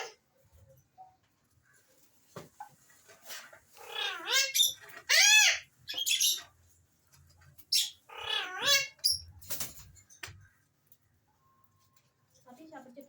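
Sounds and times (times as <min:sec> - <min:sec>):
parakeet calls: 0:03.8 - 0:06.5, 0:07.7 - 0:09.3.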